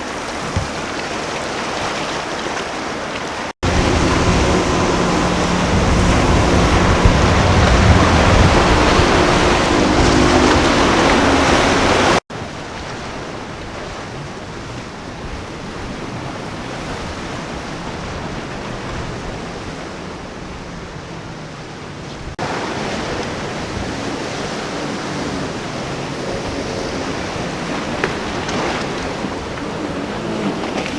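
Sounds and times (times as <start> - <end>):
powerboat engines droning: 0.0 - 30.9
rushing water: 0.0 - 30.9
surf washing: 0.0 - 30.9
wind noise on microphone: 3.6 - 12.2.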